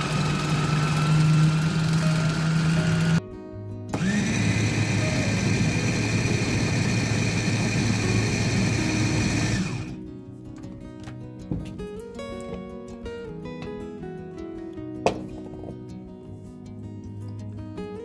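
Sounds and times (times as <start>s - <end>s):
electric blender running: 0.0s - 3.2s, 3.9s - 10.0s
background music: 0.0s - 18.0s.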